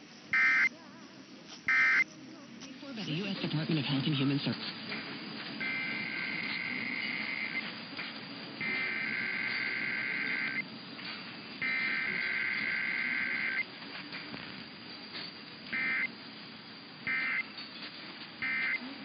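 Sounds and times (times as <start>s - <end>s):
buzzy two-tone data bursts: 0.0s - 4.5s, 5.6s - 7.7s, 8.6s - 10.7s, 11.6s - 13.7s, 15.7s - 16.2s, 17.0s - 17.6s, 18.4s - 19.0s
faint background noise: 0.0s - 19.0s.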